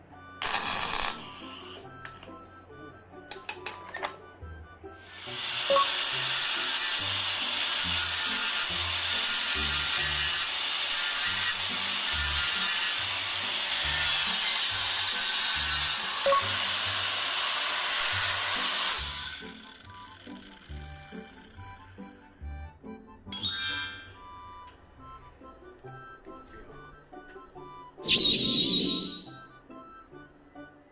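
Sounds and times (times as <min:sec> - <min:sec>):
power grinder grinding metal: 0:05.1 - 0:21.8.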